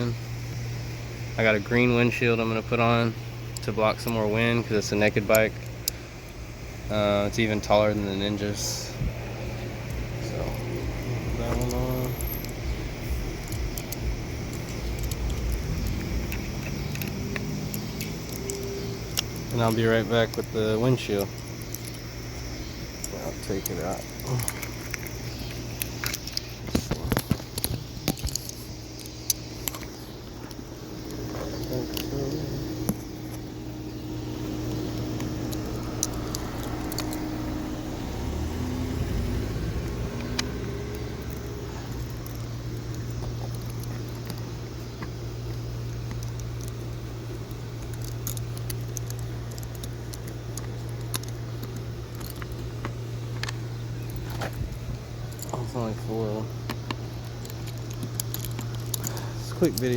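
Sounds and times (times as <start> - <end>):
steady low hum: 0.0 - 59.9
hard parts clicking and rattling: 1.3 - 37.8, 38.9 - 59.9
packaging rustling and clicking: 56.6 - 59.9.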